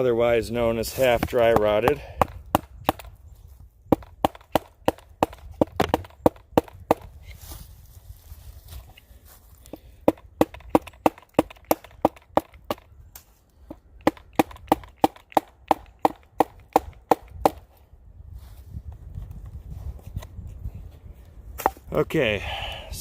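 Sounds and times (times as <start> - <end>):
wood pounded into tree trunk: 1.0 - 3.1, 3.9 - 7.2, 10.1 - 12.9, 14.0 - 17.6.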